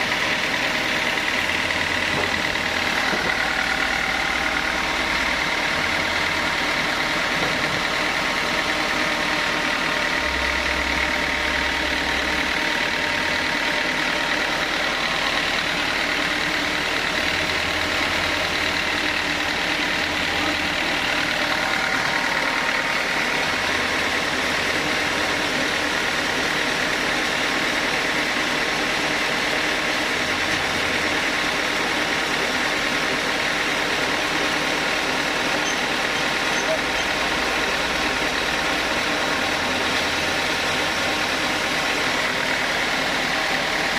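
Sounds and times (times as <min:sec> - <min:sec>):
high machine whine: 0:00.0 - 0:43.9
sawmill machinery drone: 0:00.0 - 0:43.9.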